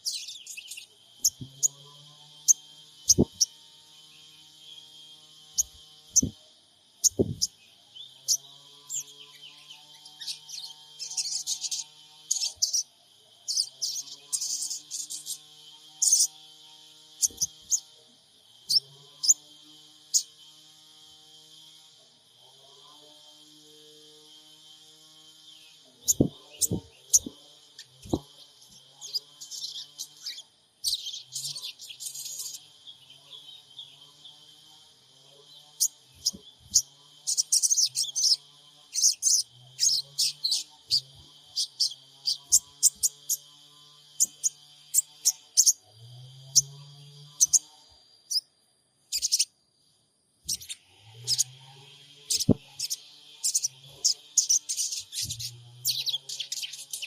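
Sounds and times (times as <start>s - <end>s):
bird chips and chattering: 0.0s - 1.8s, 2.4s - 3.7s, 5.5s - 6.4s, 7.0s - 15.4s, 16.0s - 16.3s, 17.2s - 17.9s, 26.1s - 32.6s, 35.8s - 43.5s, 44.2s - 45.8s, 47.4s - 47.7s, 49.1s - 49.5s, 50.5s - 51.5s, 52.3s - 57.0s.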